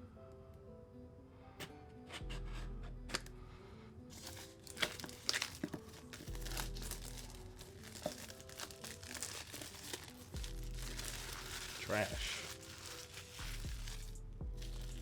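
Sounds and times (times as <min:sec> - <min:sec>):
background music with bass: 0:02.1 - 0:04.0, 0:06.3 - 0:07.8, 0:10.3 - 0:12.6, 0:13.3 - 0:15.0
packaging crinkling and tearing: 0:04.1 - 0:15.0.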